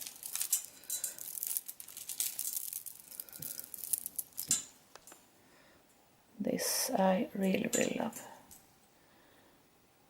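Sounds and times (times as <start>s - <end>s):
beads clicking together: 0.0s - 5.2s
rustling of necklaces: 0.0s - 5.3s.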